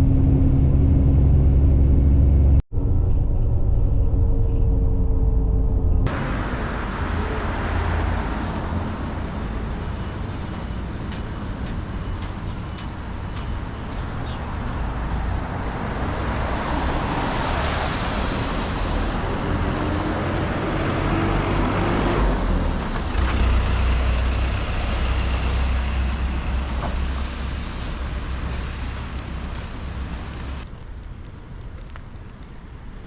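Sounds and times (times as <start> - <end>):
low traffic rumble: 0.0 - 33.0
vehicle passing: 6.1 - 30.6.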